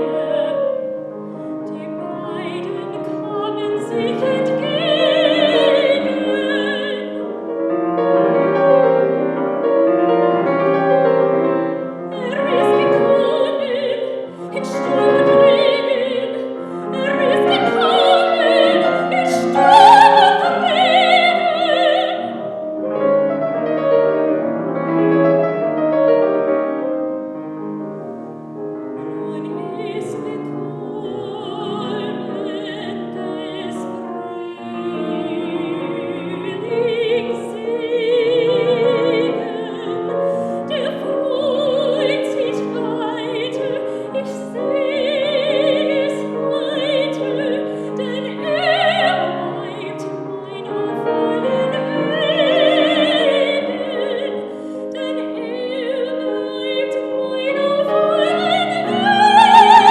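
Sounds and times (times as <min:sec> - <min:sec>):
soprano singing with vibrato: 0:00.0 - 0:26.5, 0:28.5 - 0:59.9
piano accompaniment: 0:00.0 - 0:59.9.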